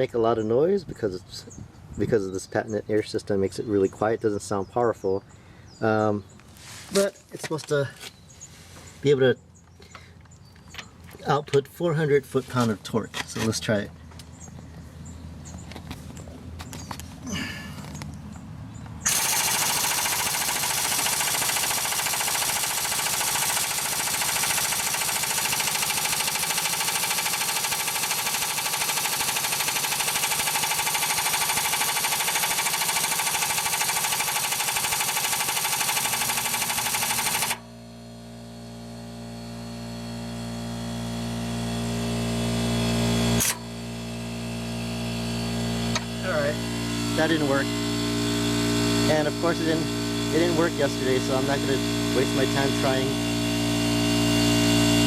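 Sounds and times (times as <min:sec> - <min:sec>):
air impact wrench hammering: 0:19.0 - 0:37.7, 0:41.1 - 0:55.0
steady hum: 0:37.2 - 0:55.0.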